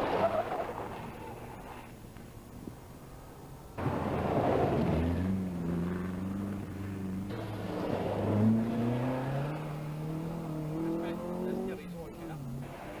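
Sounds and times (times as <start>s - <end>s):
car engine accelerating hard: 3.8s - 13.0s.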